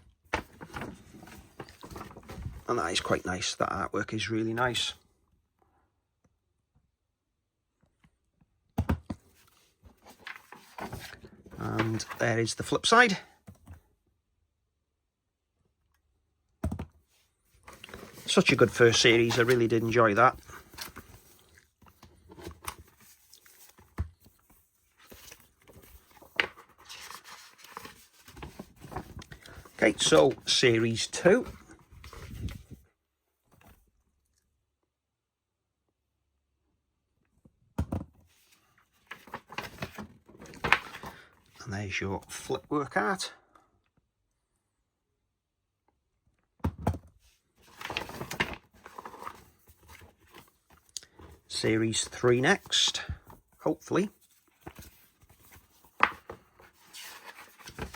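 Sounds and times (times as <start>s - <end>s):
paper rustling and sliding: 0.3s - 3.1s, 9.3s - 12.8s, 17.6s - 32.8s, 38.4s - 41.3s, 47.6s - 57.9s.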